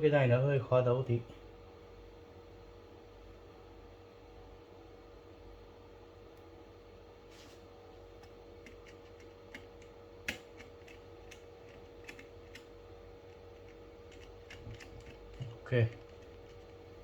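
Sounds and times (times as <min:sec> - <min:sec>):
screwdriver clicks and taps: 0:08.2 - 0:12.7, 0:13.3 - 0:16.8.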